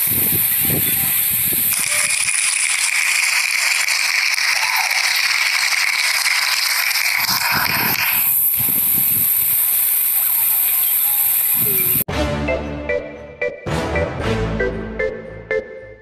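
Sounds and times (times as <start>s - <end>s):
loud steady hissing: 0.0s - 12.1s.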